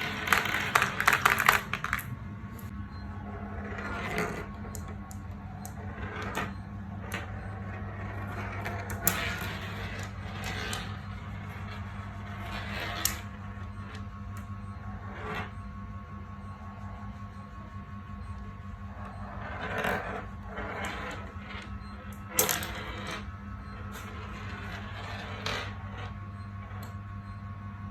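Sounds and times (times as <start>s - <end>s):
marbles clattering down a track: 0.0s - 2.2s, 8.1s - 13.4s
steady low hum: 0.0s - 27.9s.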